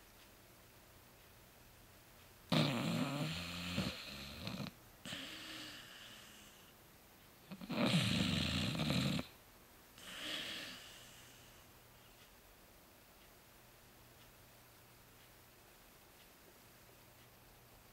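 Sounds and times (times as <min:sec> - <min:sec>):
dog snoring: 0:02.5 - 0:06.7, 0:07.5 - 0:09.4, 0:10.0 - 0:11.6.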